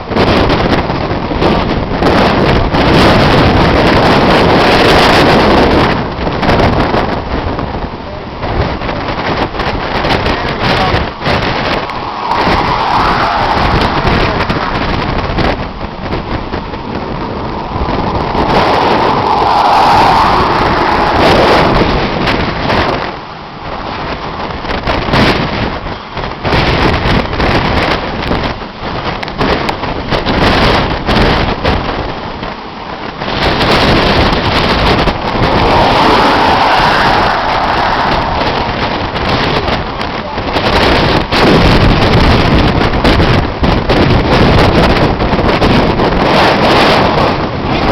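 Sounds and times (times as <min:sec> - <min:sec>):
rain: 0:00.0 - 0:26.9, 0:32.4 - 0:43.2
strong gusty wind buffeting microphone: 0:00.0 - 0:47.9.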